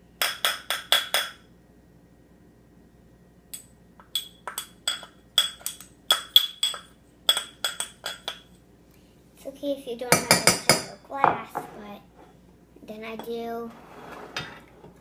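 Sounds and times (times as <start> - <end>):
metal spoon clinking against glass bowl: 3.6 - 8.5.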